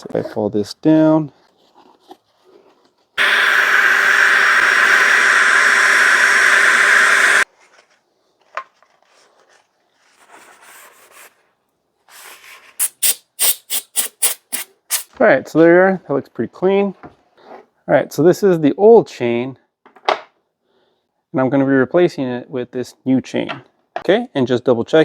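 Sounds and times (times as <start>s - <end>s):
rush of compressed air: 3.2s - 7.4s, 12.8s - 15.1s.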